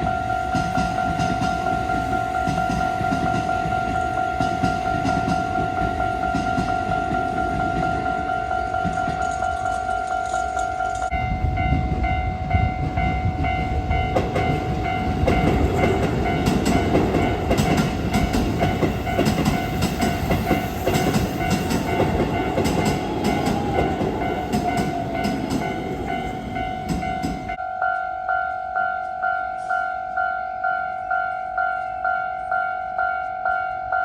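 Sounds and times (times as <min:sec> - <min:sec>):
train wheels clicking over rail joints: 0:00.0 - 0:11.1, 0:12.8 - 0:27.6
train rumbling: 0:00.0 - 0:27.6
level-crossing warning bell ringing: 0:00.0 - 0:34.0.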